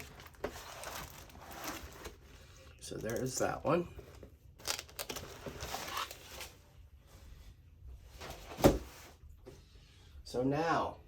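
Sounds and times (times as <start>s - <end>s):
plastic folder rustling: 0.0s - 6.6s.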